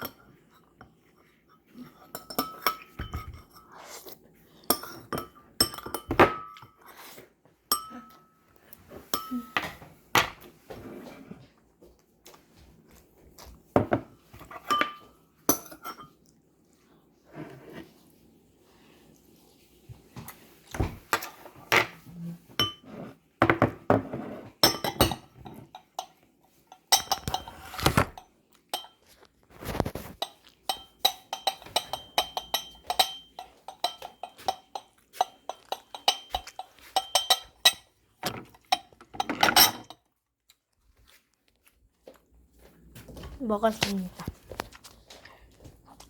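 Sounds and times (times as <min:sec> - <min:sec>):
cutlery clinking on soup bowl: 0:00.0 - 0:03.8, 0:04.6 - 0:10.5, 0:13.8 - 0:16.2, 0:20.8 - 0:40.2.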